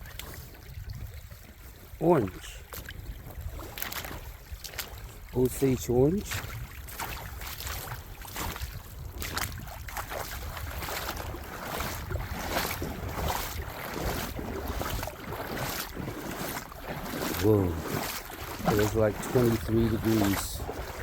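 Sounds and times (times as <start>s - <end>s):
wind rumbling on microphone: 0.0s - 21.0s
footsteps crunching on frozen ground: 6.3s - 21.0s.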